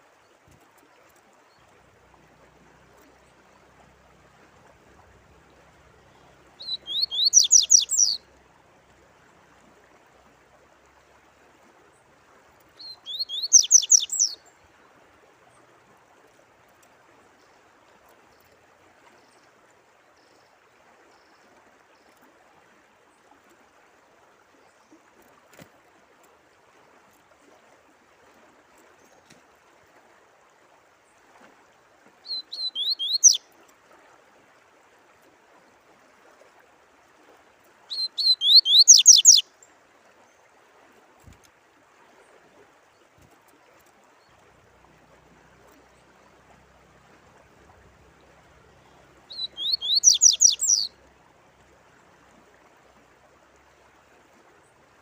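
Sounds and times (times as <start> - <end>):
running water: 0.0 - 55.0
songbird singing: 5.3 - 8.4, 12.8 - 14.7, 32.2 - 33.5, 37.9 - 39.7, 48.0 - 51.1.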